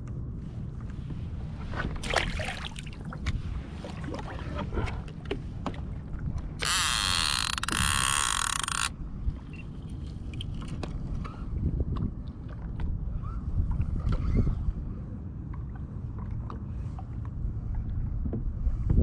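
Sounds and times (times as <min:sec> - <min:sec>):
water around a kayak: 0:00.0 - 0:19.0
wind: 0:00.0 - 0:19.0
mechanical whirring buzz: 0:06.6 - 0:09.0.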